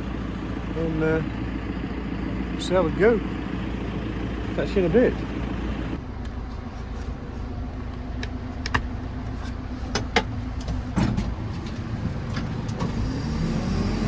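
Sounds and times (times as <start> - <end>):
diesel engine running: 0.0 - 14.0
sharp clicks and knocks: 7.9 - 12.9.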